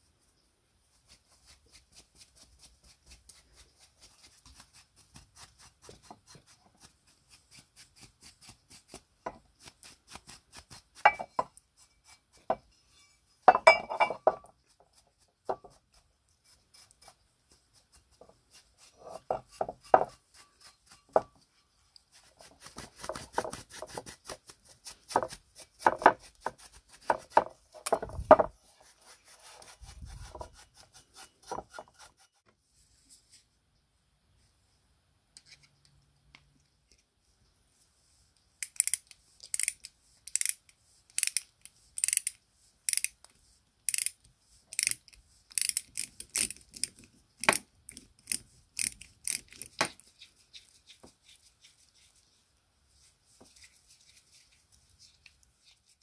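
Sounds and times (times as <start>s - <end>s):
rubbing strokes: 0.0s - 12.6s, 14.5s - 33.5s, 48.4s - 56.0s.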